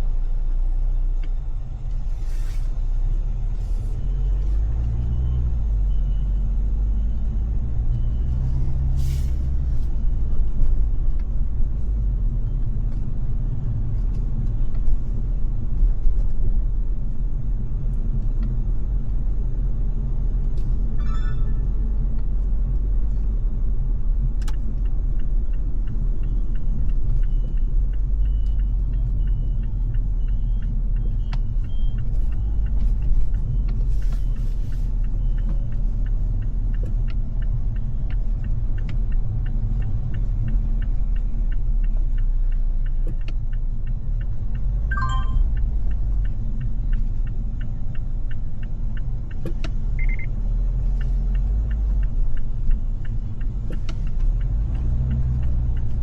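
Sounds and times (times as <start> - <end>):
car engine and road noise: 0.0 - 56.0
brief falling tone: 21.0 - 21.8, 44.9 - 45.5.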